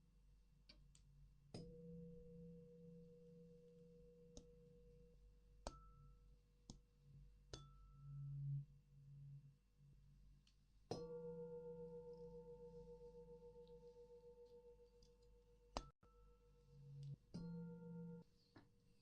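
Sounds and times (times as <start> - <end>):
tuning fork ringing: 10.9 - 18.2.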